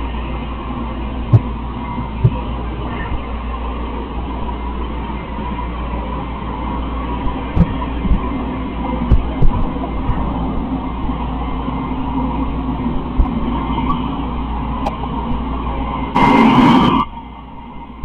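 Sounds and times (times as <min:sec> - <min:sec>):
hissy surge: 0:16.2 - 0:17.1.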